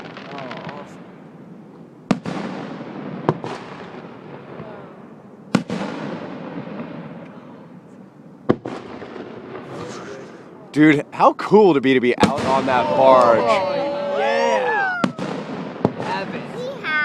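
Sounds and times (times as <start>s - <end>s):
firework crackling: 0.0s - 7.8s, 8.4s - 11.1s, 14.7s - 17.0s.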